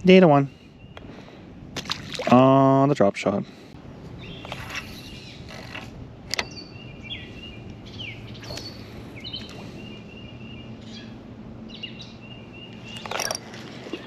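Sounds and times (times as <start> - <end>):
steady low hum: 0.0 - 14.0
bird chirping: 0.5 - 1.3, 4.2 - 14.0.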